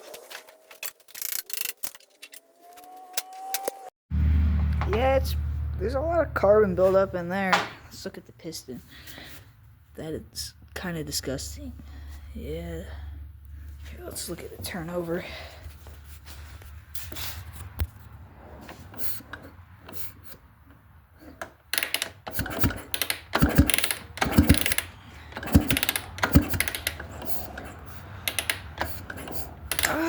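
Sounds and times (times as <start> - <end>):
engine mechanical clicks and knocks: 18.6 - 30.0.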